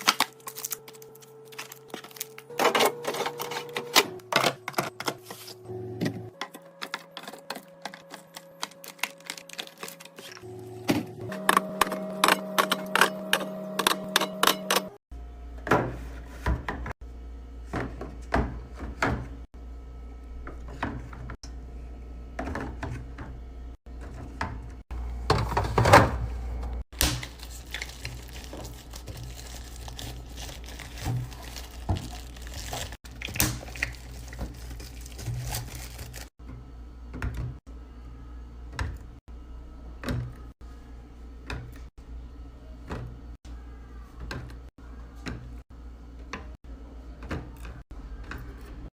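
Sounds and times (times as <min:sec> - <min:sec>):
plastic packaging crinkling: 0:00.0 - 0:03.9, 0:06.7 - 0:10.4, 0:27.2 - 0:36.3.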